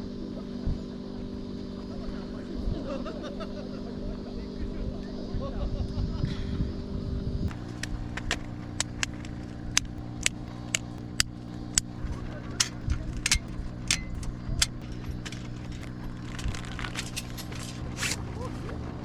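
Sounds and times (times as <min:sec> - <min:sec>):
low engine-like hum: 0:00.0 - 0:19.0
sharp clicks and clinks: 0:07.5 - 0:18.2.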